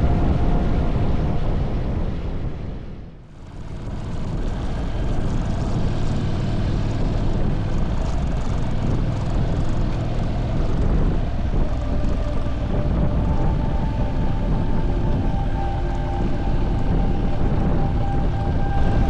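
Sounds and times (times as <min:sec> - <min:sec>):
rushing noise: 0:11.2 - 0:19.0.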